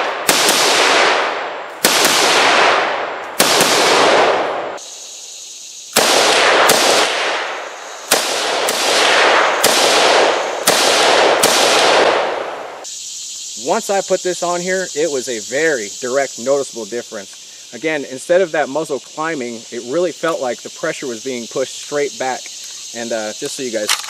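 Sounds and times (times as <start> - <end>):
rifle shots echoing: 0.0 - 4.8, 5.9 - 12.8.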